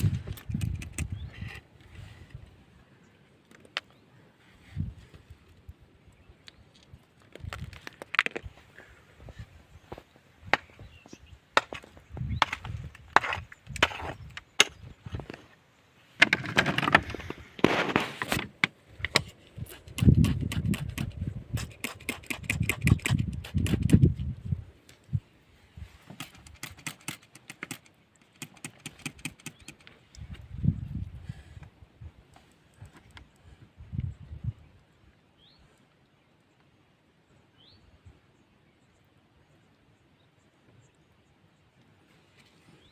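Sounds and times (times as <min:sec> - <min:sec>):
scraping and rustling: 0:16.2 - 0:18.6.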